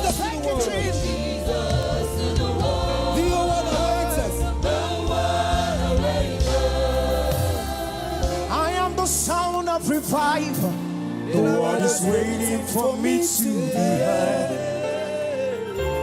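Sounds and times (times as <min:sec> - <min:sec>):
gospel choir singing: 0:00.0 - 0:16.0
live band playing: 0:00.0 - 0:16.0.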